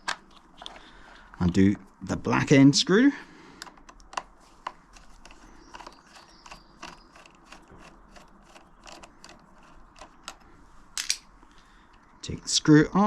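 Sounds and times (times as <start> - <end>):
screwdriver clicking and scraping: 0.0 - 0.8, 3.6 - 11.2.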